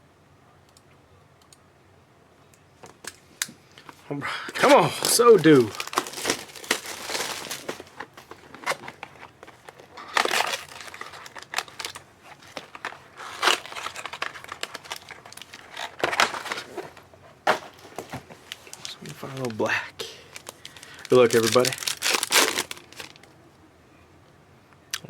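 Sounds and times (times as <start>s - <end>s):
card pack wrappers crinkling: 4.5s - 17.0s, 17.6s - 23.4s
wrappers tearing open: 4.6s - 16.7s, 20.3s - 23.3s.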